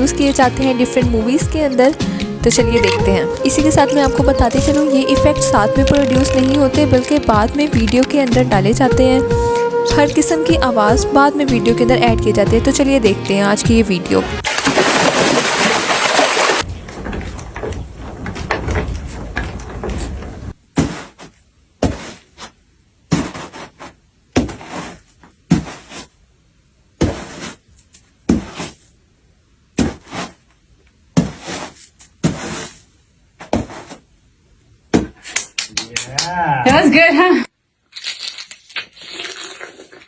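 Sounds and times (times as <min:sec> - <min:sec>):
sharp knocks and thuds: 0:16.6 - 0:22.2.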